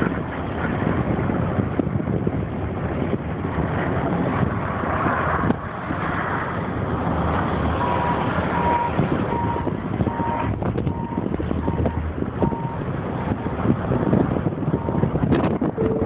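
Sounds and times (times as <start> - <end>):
vehicle rumbling on road: 0.0 - 16.0
vehicle backup alarm beeping: 7.8 - 13.4, 14.7 - 16.0.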